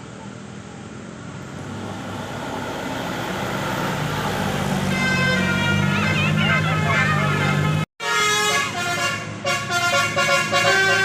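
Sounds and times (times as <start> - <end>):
bus engine and road noise: 0.0 - 11.0
multi-tone bus horn: 4.8 - 11.0.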